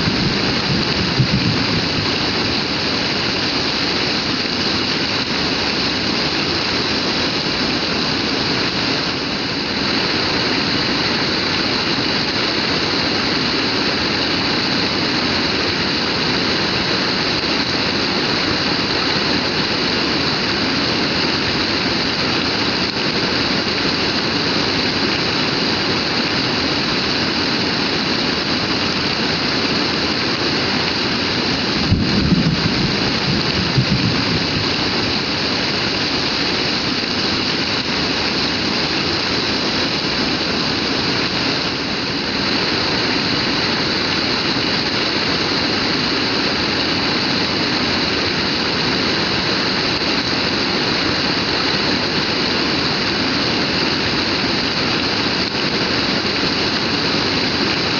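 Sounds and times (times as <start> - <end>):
heavy rain pouring: 0.0 - 57.9
low rumble: 31.8 - 35.2.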